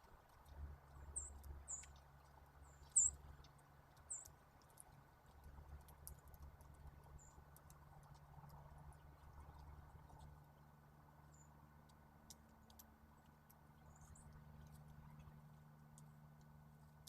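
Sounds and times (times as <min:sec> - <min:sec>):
songbird chip calls: 0:01.0 - 0:02.0, 0:02.6 - 0:03.2, 0:04.0 - 0:04.3.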